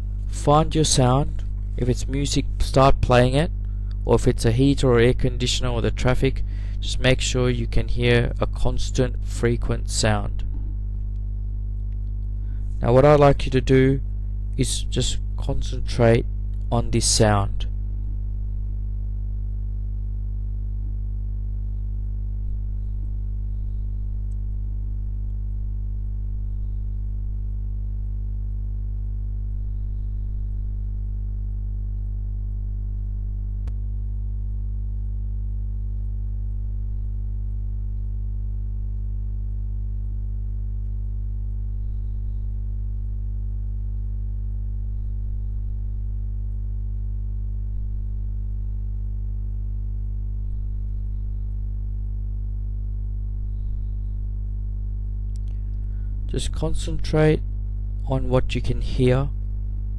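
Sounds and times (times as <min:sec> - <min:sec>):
low drone of held tones: 0:00.0 - 0:59.9
faint click: 0:55.3 - 0:55.8.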